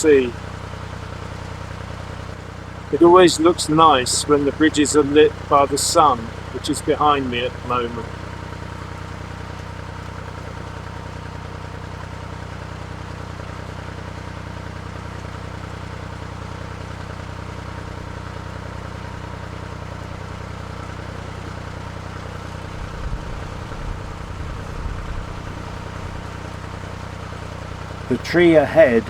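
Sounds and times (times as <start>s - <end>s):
boat diesel engine running: 0.0s - 29.0s
wind buffeting microphone: 22.8s - 26.2s.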